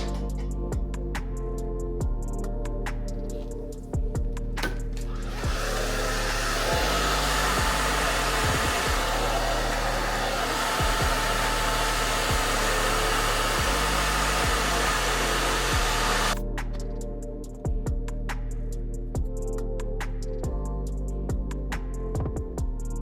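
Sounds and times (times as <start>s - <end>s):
background music with beat: 0.0s - 23.0s
hair dryer blowing: 4.6s - 16.4s.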